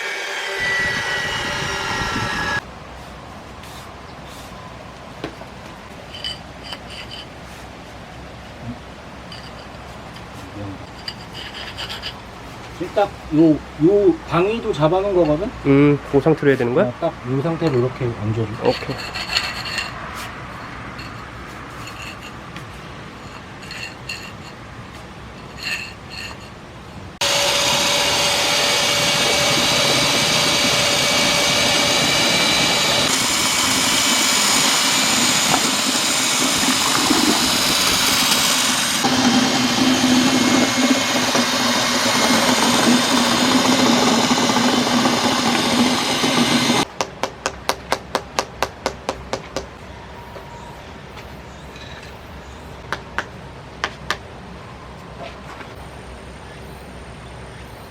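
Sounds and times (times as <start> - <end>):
power tool running: 0.0 - 2.6, 27.2 - 46.9.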